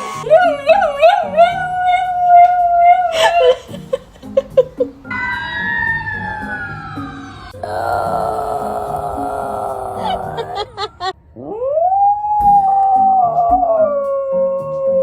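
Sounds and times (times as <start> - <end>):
dog howling: 6.1 - 11.1.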